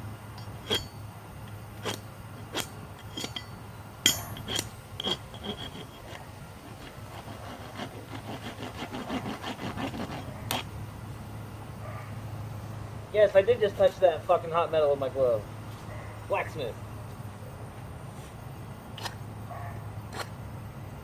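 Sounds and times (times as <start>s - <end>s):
metallic clinks: 0.3s - 1.6s, 3.0s - 5.7s
rasp filing steel: 1.8s - 3.5s, 4.1s - 10.7s.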